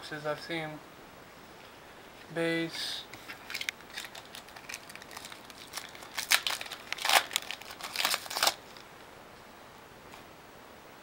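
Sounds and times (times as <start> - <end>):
foil wrapper crinkling and tearing: 3.3 - 8.8.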